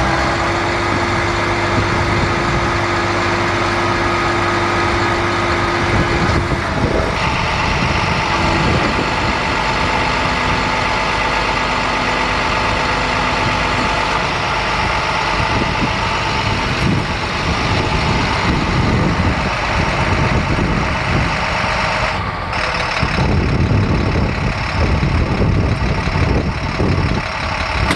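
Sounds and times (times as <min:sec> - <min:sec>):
diesel truck engine running: 0:00.0 - 0:27.9.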